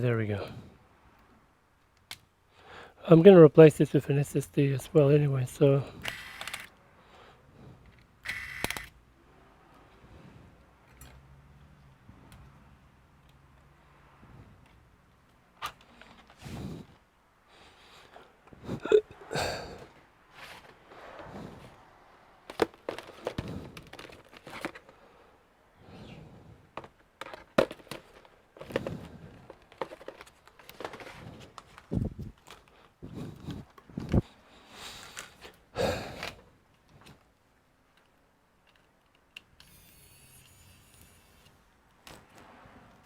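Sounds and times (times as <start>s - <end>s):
laptop parts clicking and knocking: 22.5s - 24.9s, 26.8s - 32.7s.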